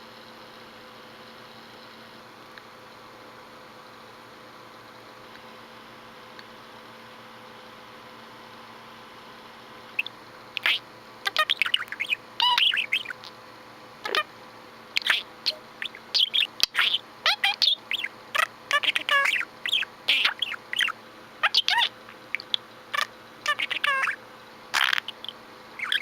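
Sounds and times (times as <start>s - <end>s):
budgerigar chattering and warbling: 10.0s - 13.3s, 14.0s - 14.3s, 15.0s - 26.0s.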